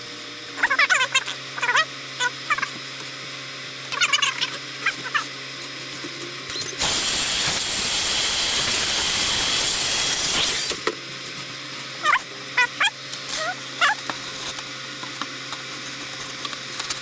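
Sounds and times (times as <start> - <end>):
high squeaky whines: 6.6 - 10.8.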